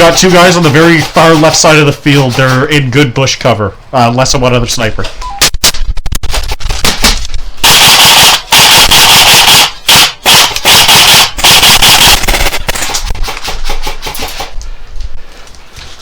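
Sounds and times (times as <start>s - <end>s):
electric gun firing bursts: 6.2s - 14.6s.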